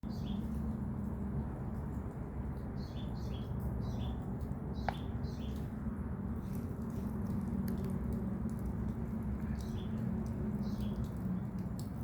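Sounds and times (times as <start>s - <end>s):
small birds chirping: 0.0s - 0.8s, 1.8s - 7.0s, 9.2s - 12.0s.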